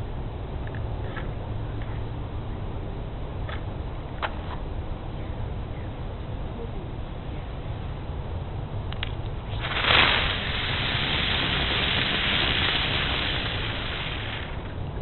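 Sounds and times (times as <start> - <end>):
low steady rumble: 0.0 - 15.0
firework whoosh and hissing sparks: 9.5 - 14.8.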